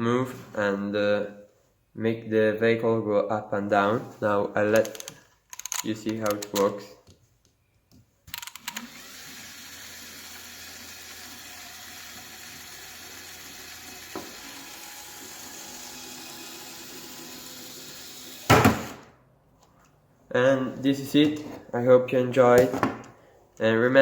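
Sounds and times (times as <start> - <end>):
gear clicks: 4.7 - 6.8, 8.3 - 9.1
electric motor whirring: 8.4 - 18.5.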